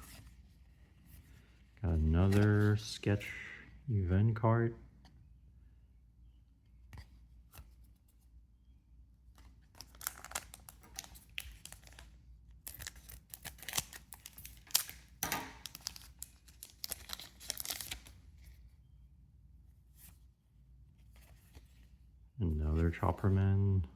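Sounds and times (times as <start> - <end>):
foil pack tearing and crinkling: 9.8 - 12.0, 12.6 - 18.1.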